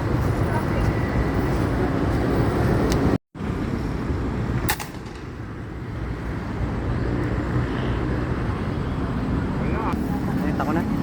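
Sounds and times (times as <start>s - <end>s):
airgun shot: 4.7s - 5.3s.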